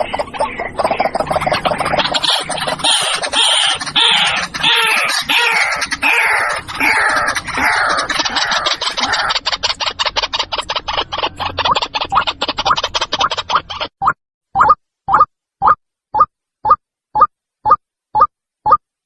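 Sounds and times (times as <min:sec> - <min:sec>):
waterhen calling: 0:00.0 - 0:09.9
fast clicking ticks: 0:05.8 - 0:13.9.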